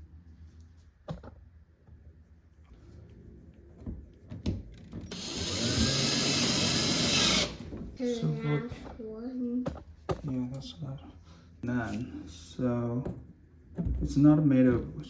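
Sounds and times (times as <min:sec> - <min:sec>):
power drill drilling into wood: 0:05.1 - 0:07.7.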